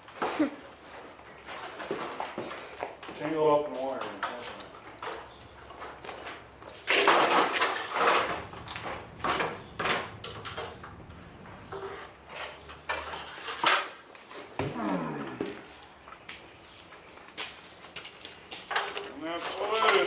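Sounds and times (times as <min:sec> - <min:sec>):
metal hardware clinking: 0:04.2 - 0:14.0.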